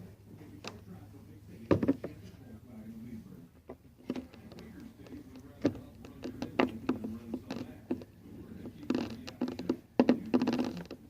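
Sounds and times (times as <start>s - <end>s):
steady low hum: 0.0s - 11.0s
rustling and clicking: 3.6s - 11.0s.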